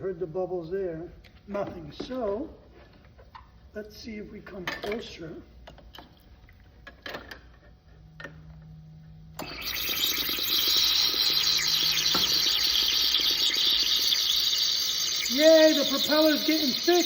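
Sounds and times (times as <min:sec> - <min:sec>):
sizzling crackle of underwater welding: 0:09.4 - 0:17.0.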